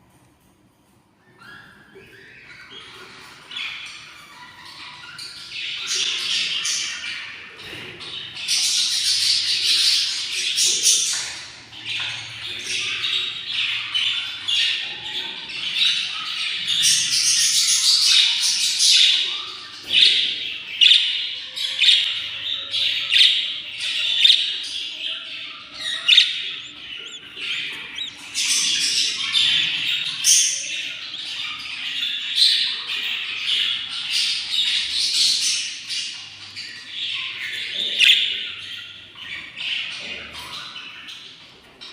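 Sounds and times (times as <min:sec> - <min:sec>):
budgerigar chicks begging chirps: 0:12.4 - 0:33.0
chicks squawking: 0:12.4 - 0:33.0.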